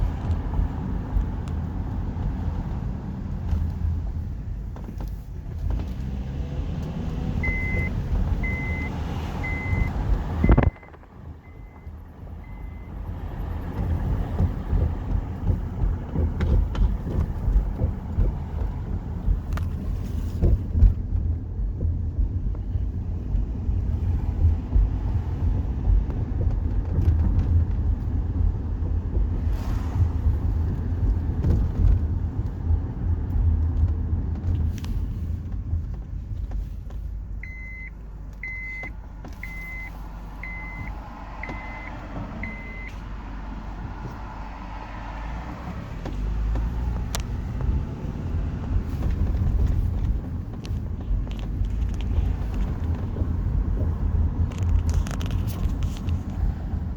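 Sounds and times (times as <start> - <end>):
suspension knocks and clunks: 0.0 - 44.6, 45.3 - 56.9
loud low road rumble: 0.0 - 56.9
short electronic beeps: 7.4 - 12.9, 37.4 - 42.9.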